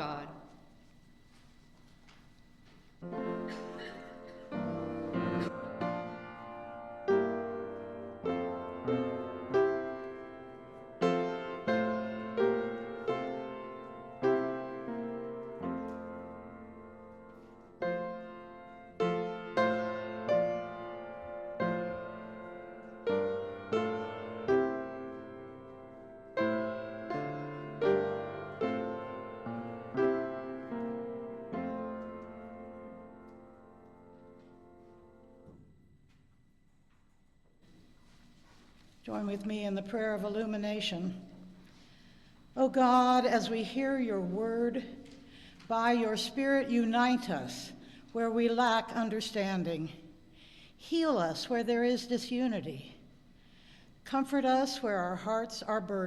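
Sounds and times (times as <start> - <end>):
slow piano chords: 3.0 - 36.1.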